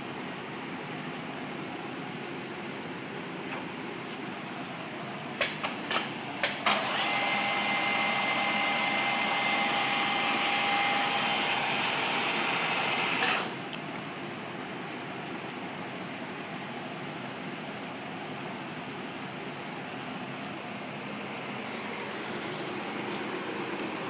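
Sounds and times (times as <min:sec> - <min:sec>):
milling machine motor whine: 0:06.6 - 0:13.7, 0:20.8 - 0:24.0.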